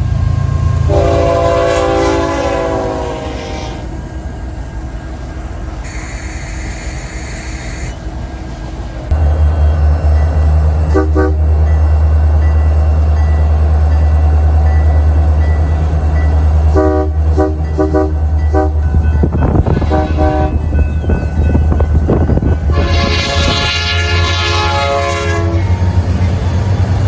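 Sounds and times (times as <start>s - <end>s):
diesel locomotive rumbling: 0.0s - 27.0s
train air horn blasts: 0.3s - 3.9s, 5.8s - 8.0s, 10.9s - 11.5s, 16.7s - 18.8s, 19.6s - 20.7s, 22.7s - 25.8s.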